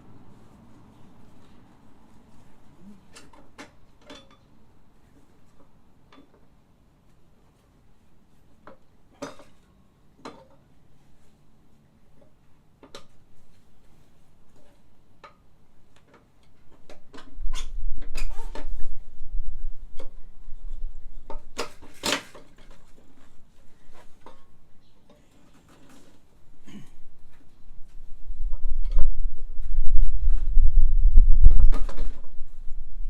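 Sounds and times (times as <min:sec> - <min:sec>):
low rumble: 0:27.1 - 0:33.0.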